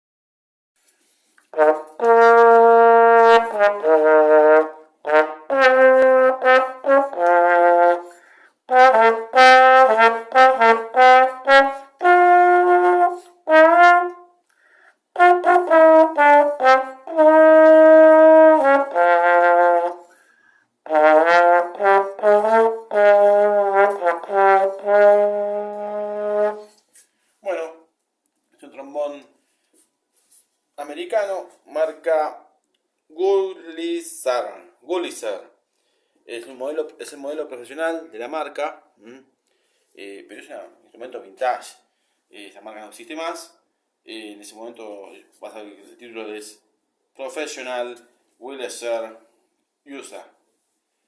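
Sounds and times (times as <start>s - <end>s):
trombone playing: 1.5s - 14.4s, 15.1s - 20.2s, 20.8s - 26.8s.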